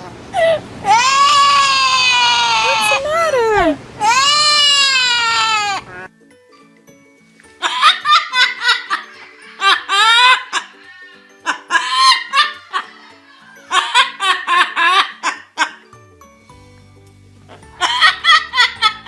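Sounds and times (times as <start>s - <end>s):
high-pitched laughter: 7.6s - 15.9s, 17.6s - 19.0s.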